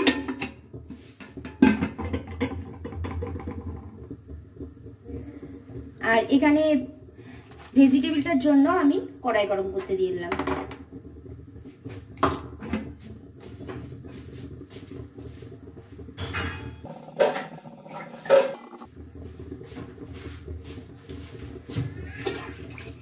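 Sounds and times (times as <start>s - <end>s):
pots and pans clinking: 0.0s - 3.9s, 16.2s - 18.9s.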